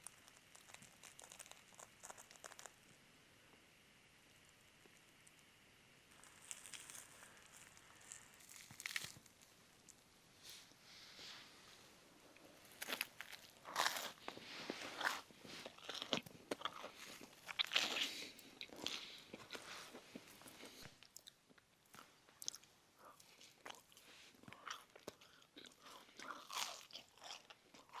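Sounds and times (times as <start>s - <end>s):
chewing crisp food: 0.0s - 2.8s, 6.1s - 9.5s, 12.7s - 28.0s.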